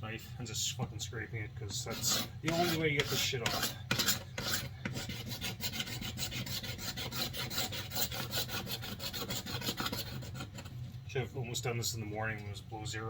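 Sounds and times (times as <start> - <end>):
knife blade scraping wood: 1.8 - 10.7.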